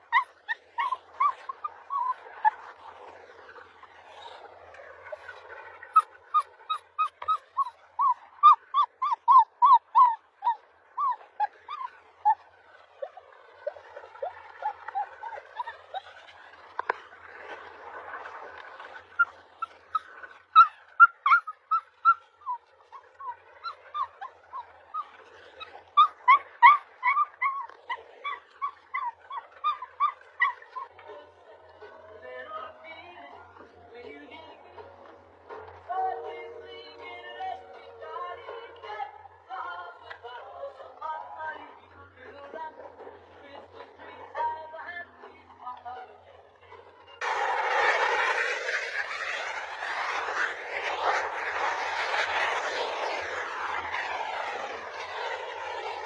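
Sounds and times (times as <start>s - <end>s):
puppy yipping: 0.0s - 2.8s, 5.1s - 16.4s, 18.8s - 31.3s.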